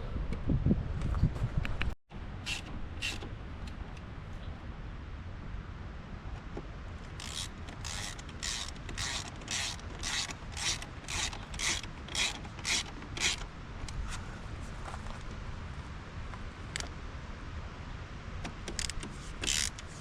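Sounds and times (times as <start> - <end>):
ratchet wrench clicking: 2.4 - 3.2, 7.1 - 13.5, 18.7 - 20.0.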